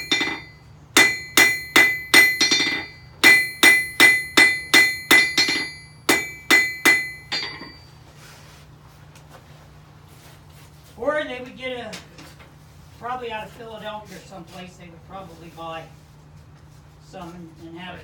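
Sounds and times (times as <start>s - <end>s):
hammer striking an anvil: 0.0s - 7.9s.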